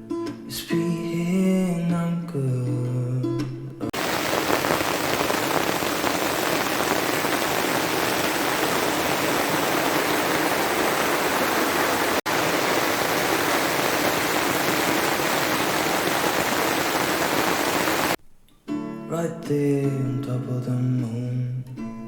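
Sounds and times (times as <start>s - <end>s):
hiss of falling water: 4.0s - 18.2s.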